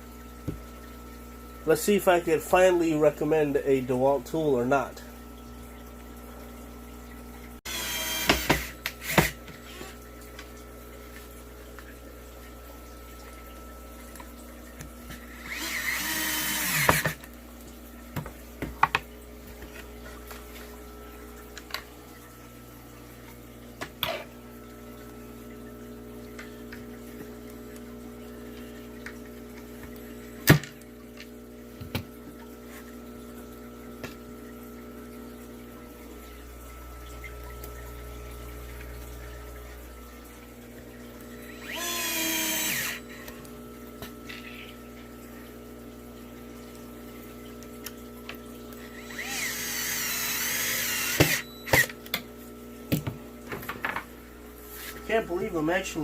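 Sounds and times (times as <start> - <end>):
cordless screwdriver driving screws: 41.6 - 43.0.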